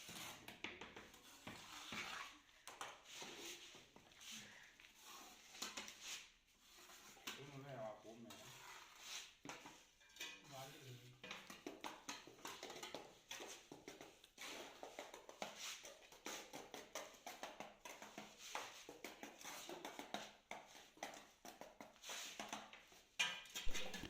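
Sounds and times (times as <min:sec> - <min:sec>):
tapping and knocking on floor tile: 0:00.5 - 0:01.6, 0:11.2 - 0:14.1, 0:18.9 - 0:24.0.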